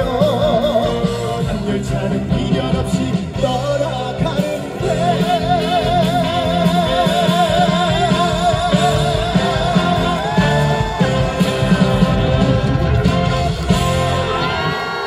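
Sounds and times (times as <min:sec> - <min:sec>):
band playing with steady beat: 0:00.0 - 0:15.0.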